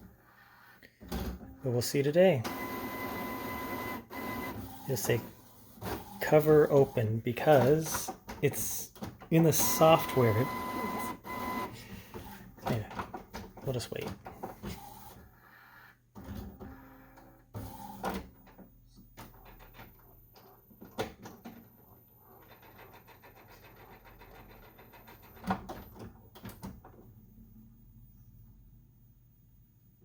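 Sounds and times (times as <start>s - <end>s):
printer whirring: 2.4s - 8.7s, 9.5s - 12.6s, 17.6s - 18.4s.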